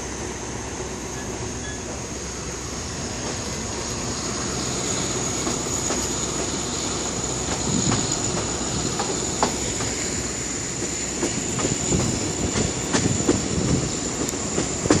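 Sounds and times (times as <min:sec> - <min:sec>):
train rumble: 0:00.0 - 0:15.0
train wheels knocking on rail joints: 0:04.6 - 0:15.0.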